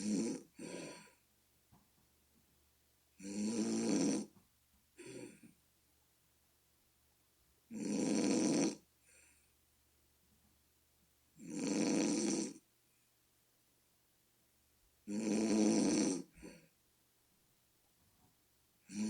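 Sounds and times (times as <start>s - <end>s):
person snoring: 0.0s - 1.2s, 3.2s - 4.3s, 7.7s - 8.8s, 11.4s - 12.6s, 15.1s - 16.6s.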